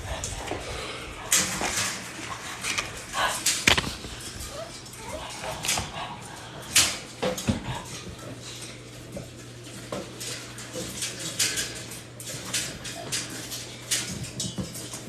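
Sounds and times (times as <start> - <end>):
low steady hum: 0.0 - 11.7
puppies whimpering and squeaking: 1.3 - 6.2.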